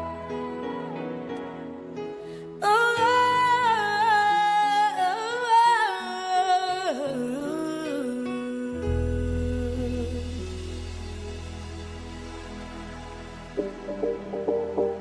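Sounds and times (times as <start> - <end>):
person singing gospel song: 0.0 - 2.0
soft sustained chords: 9.2 - 15.0.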